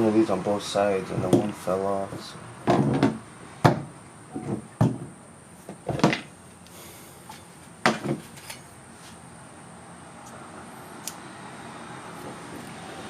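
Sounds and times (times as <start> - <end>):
tools knocking and clunking: 1.1 - 1.6, 2.6 - 6.3, 7.8 - 8.7.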